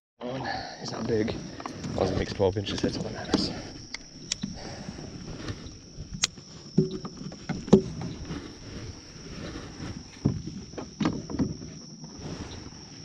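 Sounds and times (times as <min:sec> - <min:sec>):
insects buzzing: 0:00.2 - 0:13.0
sharp knocks and clicks: 0:06.2 - 0:08.0.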